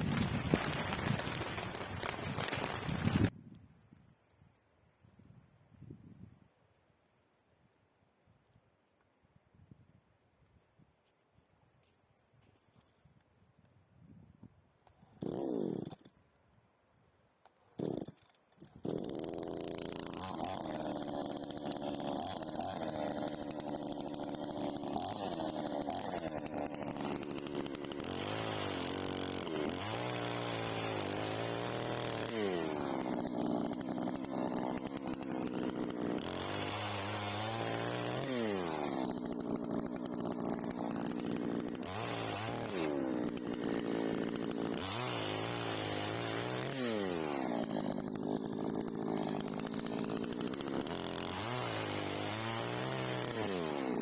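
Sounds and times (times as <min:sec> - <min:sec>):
chainsaw engine revving: 0:00.0 - 0:03.3, 0:15.0 - 0:16.1, 0:17.6 - 0:54.0.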